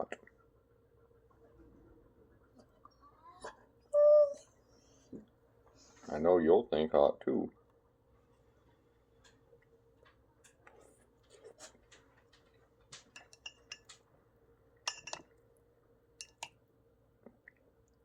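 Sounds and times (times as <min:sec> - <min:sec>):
faint steady hum: 0:00.0 - 0:18.0
utensil clinking against dish: 0:12.3 - 0:14.0, 0:14.9 - 0:15.3, 0:16.2 - 0:16.5.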